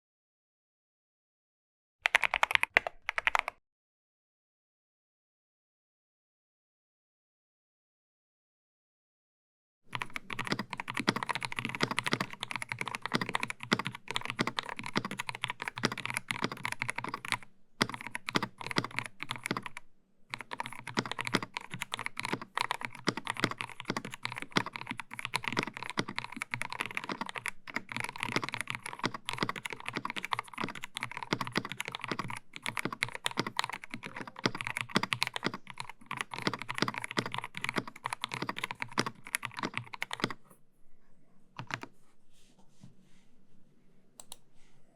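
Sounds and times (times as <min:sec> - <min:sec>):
mechanical keyboard typing: 0:02.1 - 0:03.6, 0:09.9 - 0:40.5, 0:41.6 - 0:41.9, 0:44.2 - 0:44.4.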